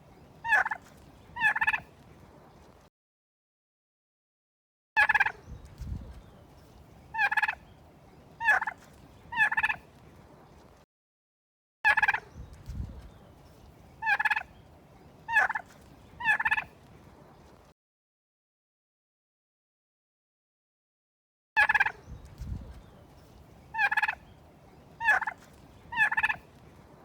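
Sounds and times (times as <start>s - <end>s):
turkey gobbling: 0.4s - 1.9s, 7.1s - 7.6s, 8.4s - 9.8s, 13.9s - 16.7s, 21.6s - 22.0s, 23.6s - 26.7s.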